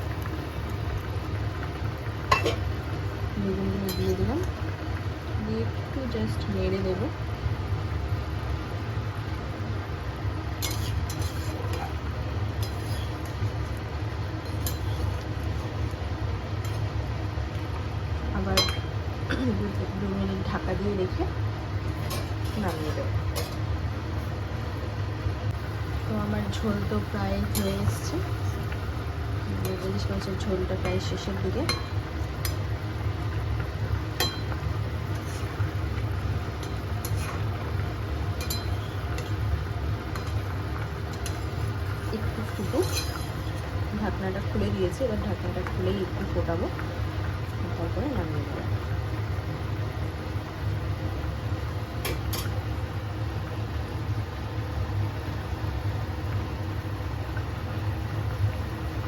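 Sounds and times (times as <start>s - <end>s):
steady low hum: 0.0s - 59.0s
utensil clinking against pot: 38.4s - 39.3s, 42.4s - 43.4s.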